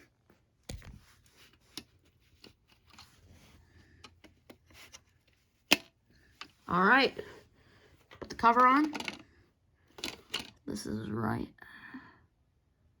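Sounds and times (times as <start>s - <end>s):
plastic handling clicks and scraping: 0.6s - 6.7s, 8.0s - 9.3s, 9.9s - 10.6s.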